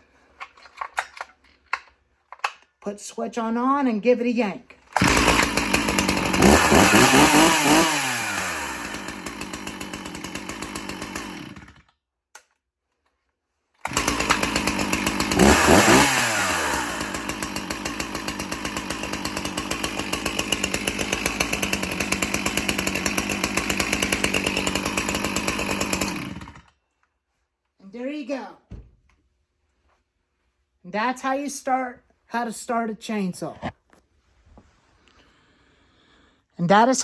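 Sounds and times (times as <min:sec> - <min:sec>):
chainsaw revving and idling: 0:04.9 - 0:11.8, 0:13.8 - 0:26.7.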